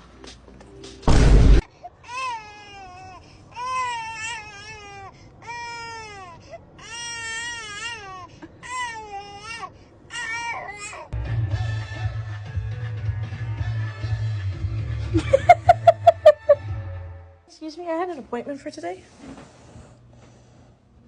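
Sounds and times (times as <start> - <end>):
loud short burst of noise: 1.1 - 1.6.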